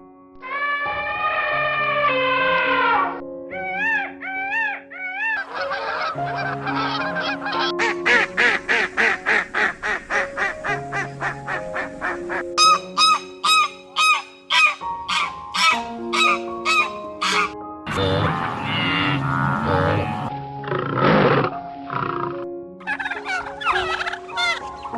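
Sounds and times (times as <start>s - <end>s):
background music with sustained notes: 0.0s - 24.9s
poultry calling: 3.6s - 19.9s, 22.8s - 24.9s.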